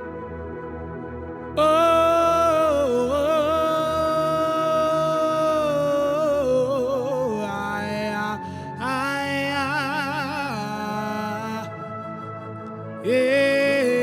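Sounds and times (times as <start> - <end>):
low musical accompaniment: 0.0 - 14.0
person singing long notes: 1.6 - 11.7.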